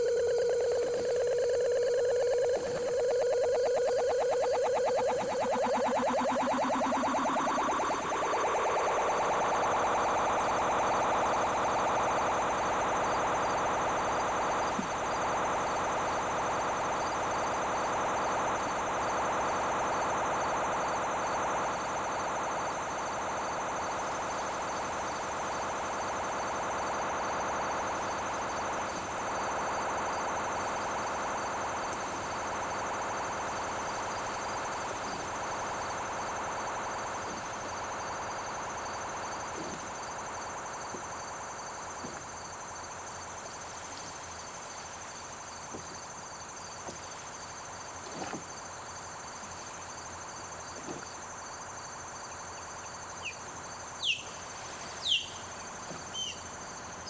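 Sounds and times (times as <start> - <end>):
steady high tone: 0.0 - 16.6
synthesizer drone: 0.0 - 23.8
faint pulsing high tone: 0.0 - 41.4
sharp bird chirps: 54.0 - 56.5.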